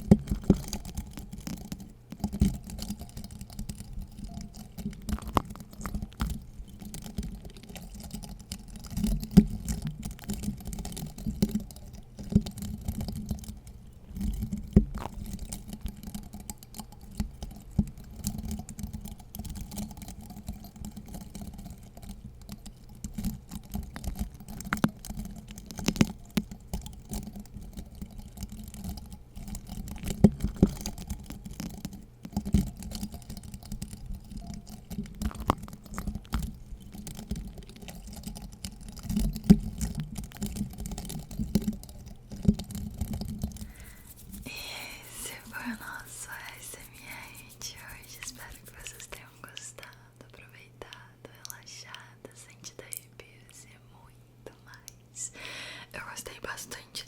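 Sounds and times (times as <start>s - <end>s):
scratchy rustles: 28.7s - 49.8s.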